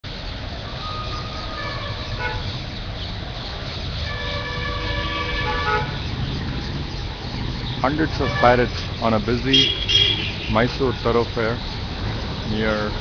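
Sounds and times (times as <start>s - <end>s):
busy road traffic: 0.0s - 13.0s
vehicle horns honking: 0.9s - 2.5s, 4.0s - 6.1s, 7.8s - 11.2s.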